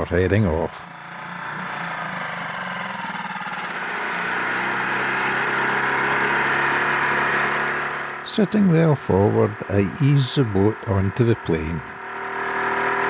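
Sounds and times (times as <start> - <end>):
outboard motor running: 0.0 - 13.0.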